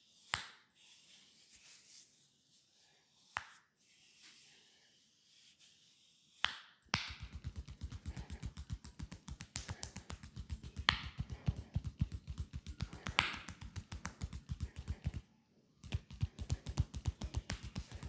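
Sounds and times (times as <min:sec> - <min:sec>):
hands tapping rapidly on a leg: 0:07.0 - 0:18.0.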